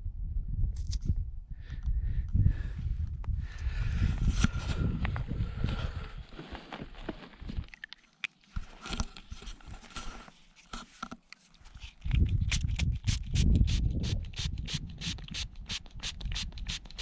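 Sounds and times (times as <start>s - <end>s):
rubbing strokes on a coin: 13.1s - 17.0s.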